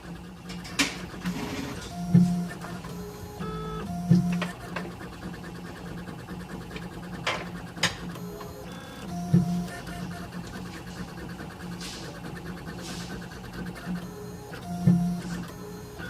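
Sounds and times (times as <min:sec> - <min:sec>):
engraving machine humming: 0:01.1 - 0:16.0.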